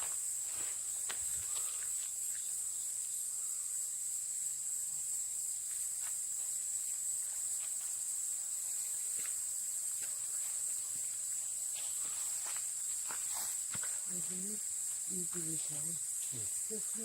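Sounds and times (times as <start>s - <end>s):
high-pitched insect chorus: 0.0s - 17.0s
footsteps crunching: 9.1s - 14.4s.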